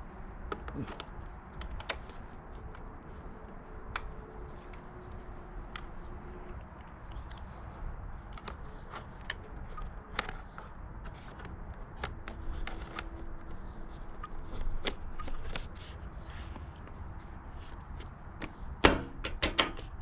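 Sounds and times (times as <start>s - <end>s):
clicks and taps of handling parts: 8.3s - 15.9s.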